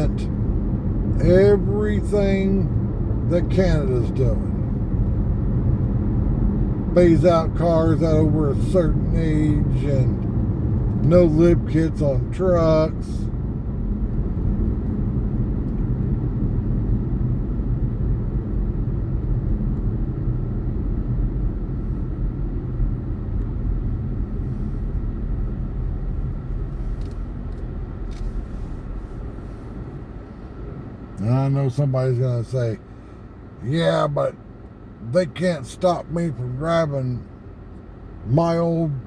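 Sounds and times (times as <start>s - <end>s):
car engine and road rumble: 0.0s - 39.0s.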